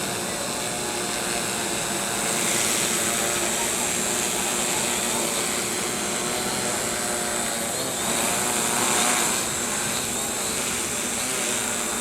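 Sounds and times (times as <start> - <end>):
drone propellers whirring: 0.0 - 12.0.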